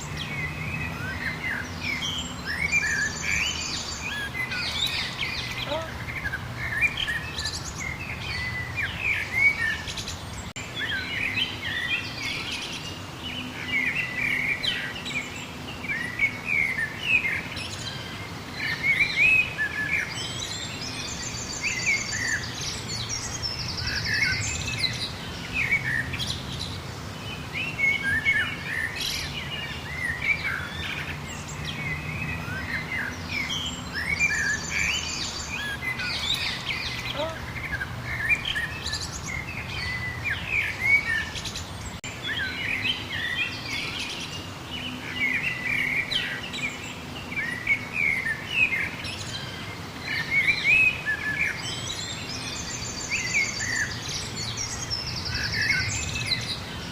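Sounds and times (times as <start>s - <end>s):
songbirds chirping and singing: 0.0s - 56.9s.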